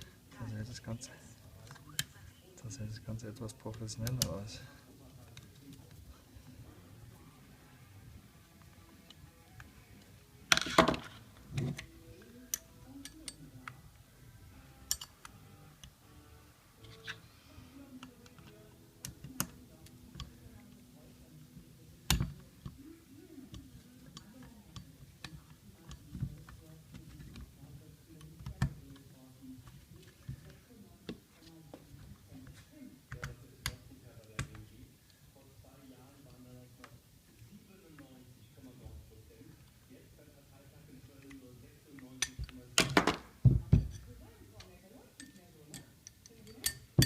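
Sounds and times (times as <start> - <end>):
metal tools clicking and knocking: 14.8 - 15.2, 45.2 - 47.0.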